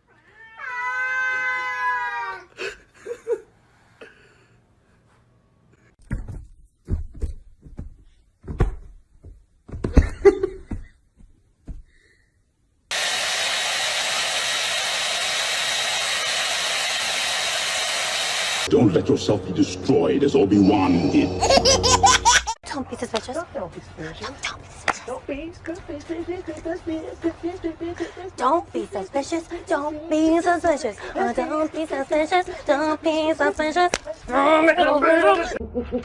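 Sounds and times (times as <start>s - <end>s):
cat meowing: 0.1s - 2.2s
thumps and knocks: 6.0s - 11.9s
loud rushing blower noise: 12.9s - 22.6s.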